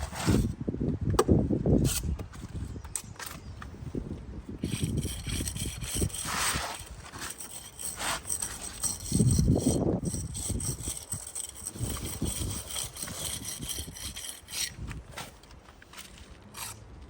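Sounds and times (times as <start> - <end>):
jointing tool scraping mortar: 4.6 - 16.8.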